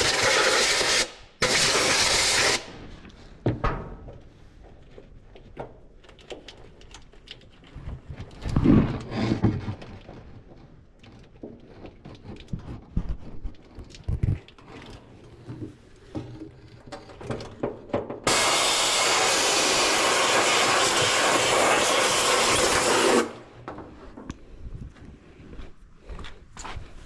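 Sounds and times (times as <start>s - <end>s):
air blow gun hissing: 18.3s - 23.4s.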